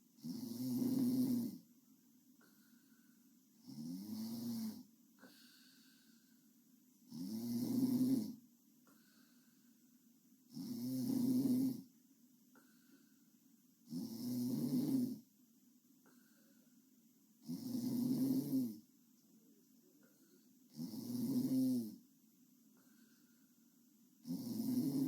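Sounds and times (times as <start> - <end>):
girl snoring: 0.2 - 1.6, 3.6 - 6.0, 7.1 - 8.4, 10.5 - 11.9, 13.9 - 15.2, 17.4 - 18.8, 20.7 - 22.0, 24.2 - 25.0.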